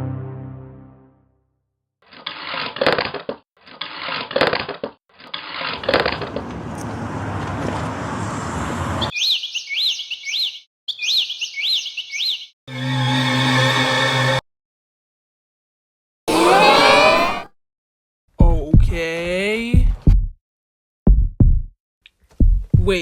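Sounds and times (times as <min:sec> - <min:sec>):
rising bird-like chirps: 0:09.0 - 0:12.6.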